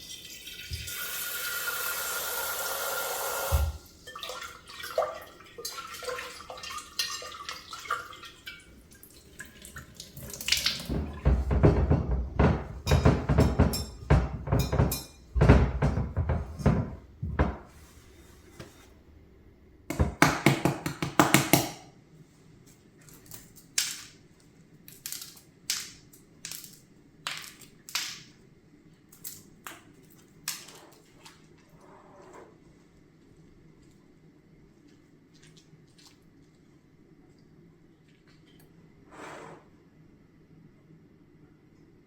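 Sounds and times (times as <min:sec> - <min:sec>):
kitchenware knocks and clatters: 0:10.6 - 0:17.8.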